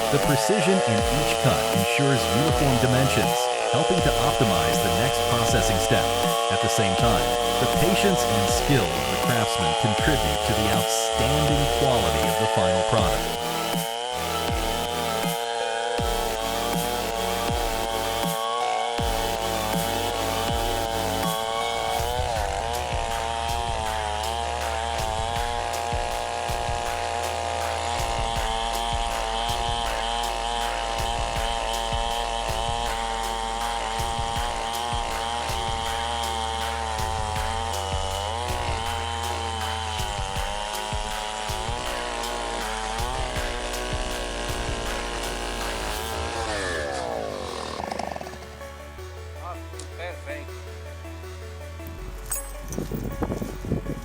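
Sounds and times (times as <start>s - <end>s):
chainsaw engine cutting: 0.0s - 51.2s, 51.8s - 54.0s
background music with beat: 0.0s - 54.0s.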